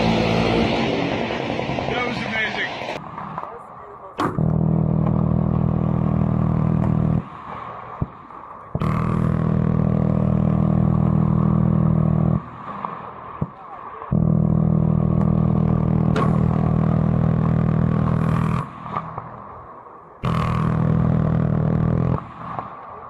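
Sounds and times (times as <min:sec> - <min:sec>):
sharp cracks: 0:02.0 - 0:14.3, 0:15.1 - 0:23.0
minigun firing: 0:04.2 - 0:19.6, 0:20.2 - 0:23.0.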